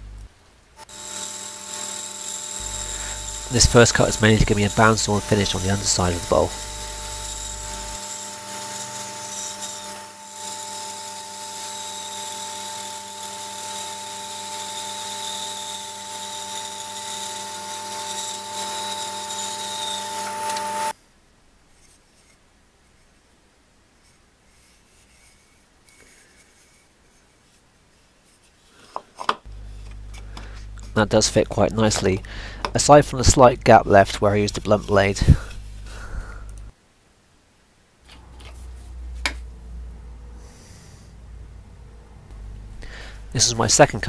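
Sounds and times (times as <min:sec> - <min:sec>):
bandsaw cutting wood: 0:00.8 - 0:20.9
faint background noise: 0:20.9 - 0:44.0.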